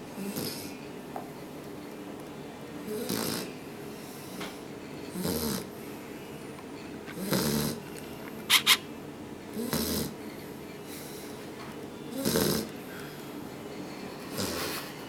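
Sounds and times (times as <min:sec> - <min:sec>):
puppy snoring: 0:00.2 - 0:00.7, 0:02.9 - 0:03.6, 0:05.1 - 0:05.7, 0:07.1 - 0:07.8, 0:09.5 - 0:10.2, 0:12.1 - 0:12.7, 0:14.3 - 0:14.8.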